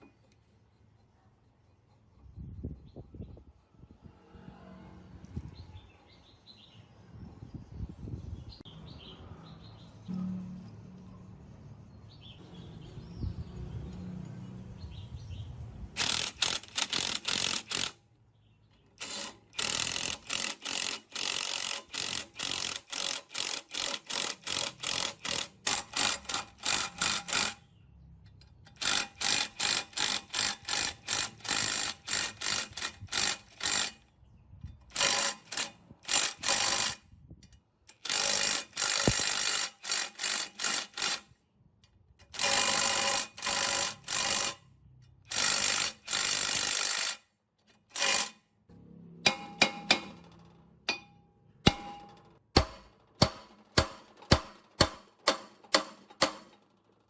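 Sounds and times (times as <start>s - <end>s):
hand tool ratcheting on metal: 16.0s - 18.0s, 19.0s - 27.6s, 28.3s - 48.4s, 49.3s - 57.0s.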